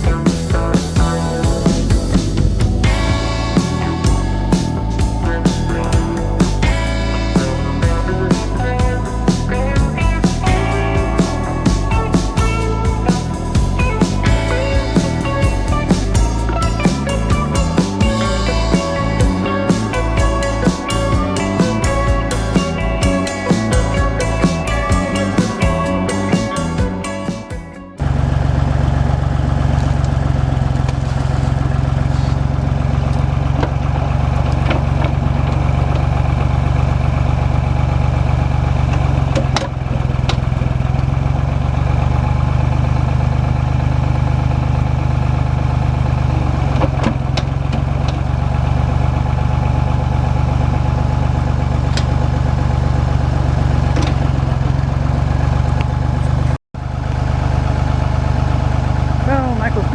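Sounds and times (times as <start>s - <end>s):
tractor engine running: 0.0s - 59.9s.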